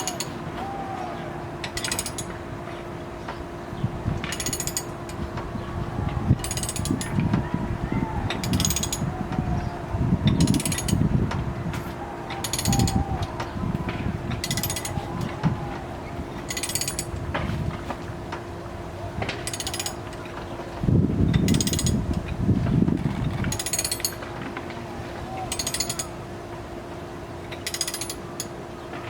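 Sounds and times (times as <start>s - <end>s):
ratchet clicks: 4.2s - 4.9s, 27.7s - 28.2s.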